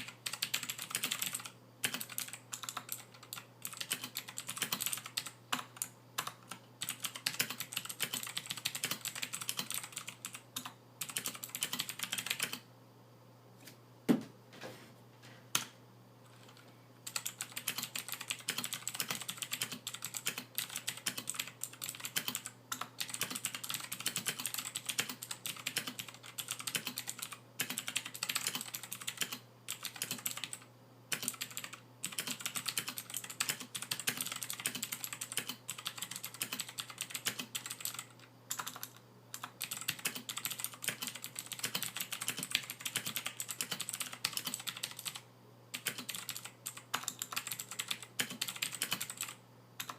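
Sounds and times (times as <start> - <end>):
fast typing on mechanical keyboard: 0.0 - 12.6, 16.3 - 49.9.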